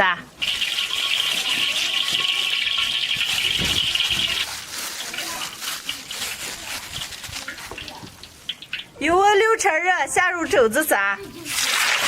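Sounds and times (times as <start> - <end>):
spitting oil pops and crackles: 0.4 - 9.0
meat sizzling in hot oil: 0.4 - 9.1, 11.4 - 12.0.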